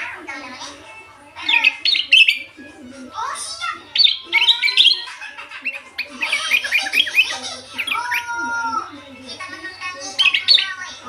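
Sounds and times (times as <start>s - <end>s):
bulbul singing chirps: 1.4s - 2.6s, 3.9s - 5.1s, 5.7s - 8.4s, 10.1s - 10.8s.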